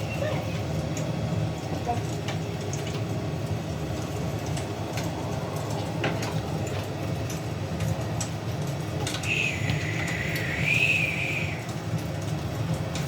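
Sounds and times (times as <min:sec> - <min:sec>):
fire crackling and popping: 0:00.8 - 0:13.0
steady low rumble: 0:03.2 - 0:13.0
thin wavering whistle: 0:09.3 - 0:11.6.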